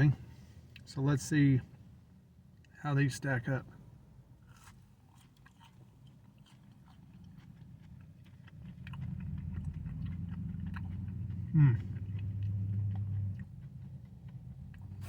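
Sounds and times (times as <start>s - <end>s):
low steady hum: 0.0s - 15.0s
person chewing with crunches: 4.4s - 15.0s.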